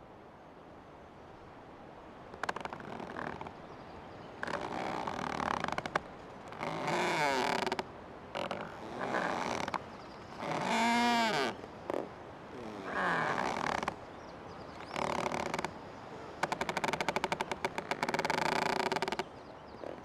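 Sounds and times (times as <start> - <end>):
old tree creaking: 2.3 - 3.6, 4.3 - 14.0, 14.8 - 15.8, 16.4 - 20.0.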